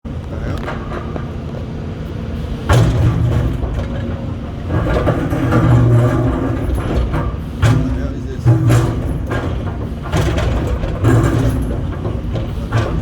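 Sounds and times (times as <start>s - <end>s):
diesel engine running: 0.1s - 13.0s
loud machine hit: 2.6s - 13.0s.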